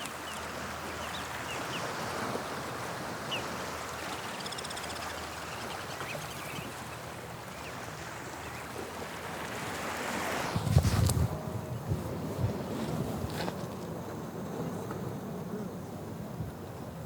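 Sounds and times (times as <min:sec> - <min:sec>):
sea waves washing on a beach: 0:00.0 - 0:17.0
wind buffeting the microphone: 0:10.1 - 0:17.0.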